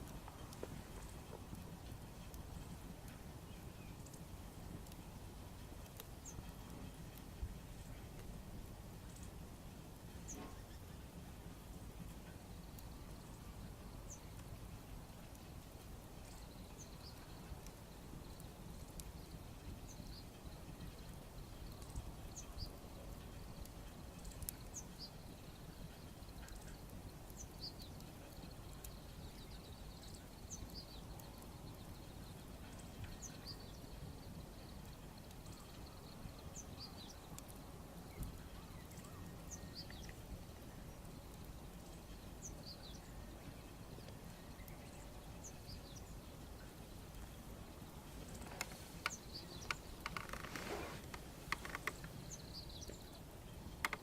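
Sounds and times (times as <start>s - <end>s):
small birds chirping: 0.0s - 8.3s, 9.0s - 54.0s
faint sharp clicks: 4.0s - 5.0s, 23.6s - 24.8s, 48.3s - 53.0s, 53.7s - 54.0s.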